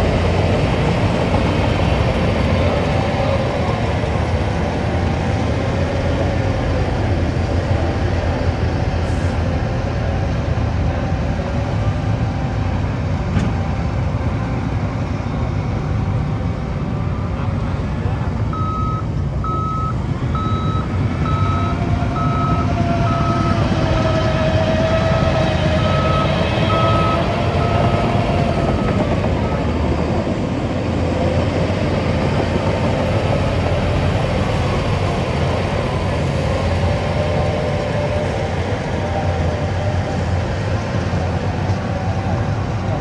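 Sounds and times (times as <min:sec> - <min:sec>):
diesel engine under load: 0:00.0 - 0:43.0
reversing alarm beeping: 0:18.5 - 0:24.1, 0:25.0 - 0:29.8.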